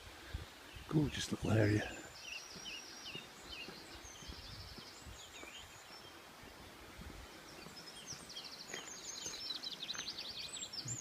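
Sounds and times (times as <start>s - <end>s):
songbirds singing: 0.0s - 11.0s
wind rumble on microphone: 4.1s - 5.8s.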